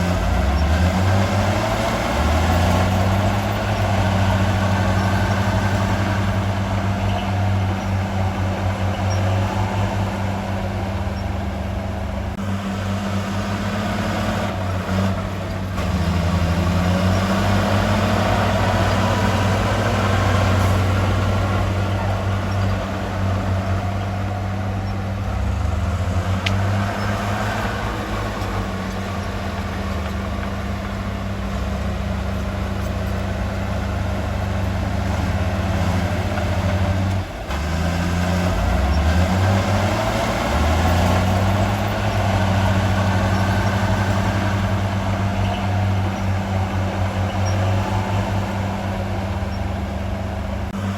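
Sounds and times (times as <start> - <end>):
heavy diesel engine running: 0.0 - 50.9.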